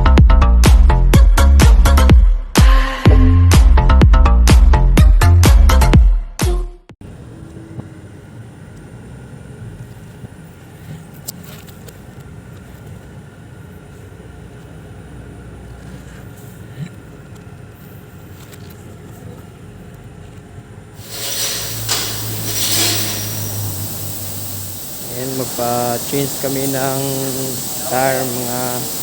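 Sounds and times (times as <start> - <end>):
car rumbling: 7.0 - 11.2, 21.1 - 29.0.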